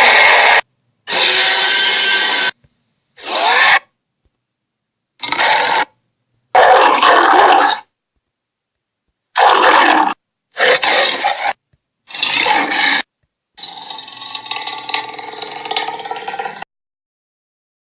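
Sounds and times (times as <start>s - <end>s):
monster growls: 9.4s - 13.0s, 13.6s - 16.6s.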